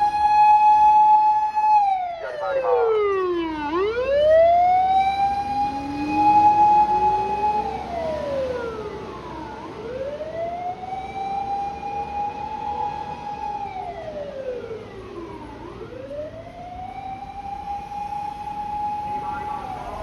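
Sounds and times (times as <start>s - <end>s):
electronic siren wailing: 1.5s - 8.0s, 17.0s - 20.0s.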